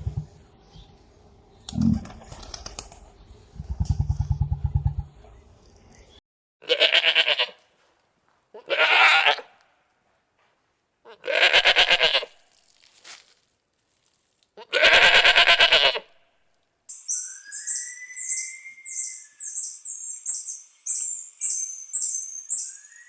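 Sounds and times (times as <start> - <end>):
trembling bleats: 6.6 - 7.6, 8.6 - 9.5, 11.1 - 12.3, 14.6 - 16.1
short high chirps: 16.9 - 23.0.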